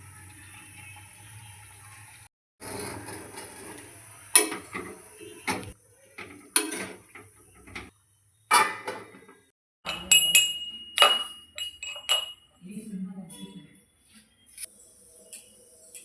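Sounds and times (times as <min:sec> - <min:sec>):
kitchen dishes clattering: 0:02.6 - 0:07.9, 0:08.5 - 0:12.5.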